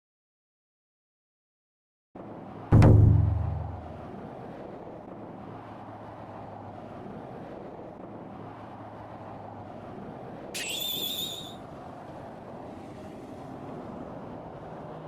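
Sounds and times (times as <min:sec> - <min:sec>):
car road and wind noise: 0:02.2 - 0:15.0
low steady hum: 0:02.7 - 0:04.3
high wavering tone: 0:10.6 - 0:11.6.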